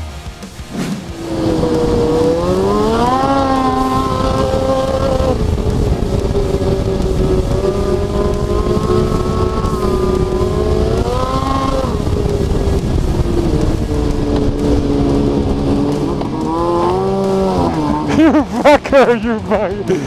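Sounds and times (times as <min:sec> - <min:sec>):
snowmobile engine running: 0:00.0 - 0:20.0.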